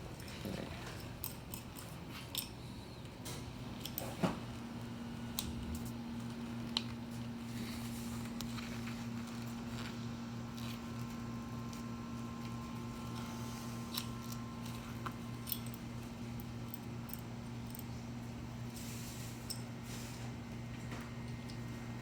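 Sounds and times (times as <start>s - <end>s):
steady low hum: 0.0s - 22.0s
clinks of small metal parts: 1.0s - 2.6s, 13.9s - 15.8s.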